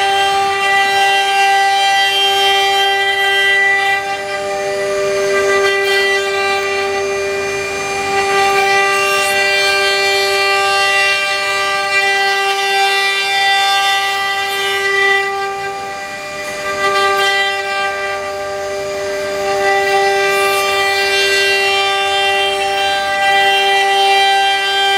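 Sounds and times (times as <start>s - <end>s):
spindle high-pitched whine: 0.0s - 24.9s.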